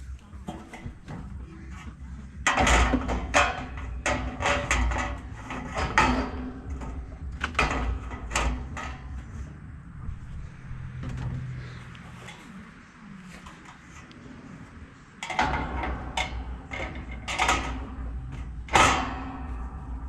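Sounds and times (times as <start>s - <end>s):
metal parts clanking: 0.5s - 12.6s, 13.4s - 20.0s.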